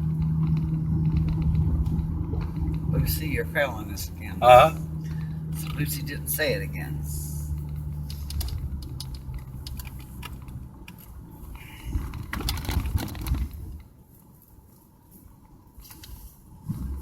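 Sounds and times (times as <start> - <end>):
car engine and road hum: 0.0 - 17.0
small clicks and rattles: 7.5 - 11.2, 11.9 - 13.9.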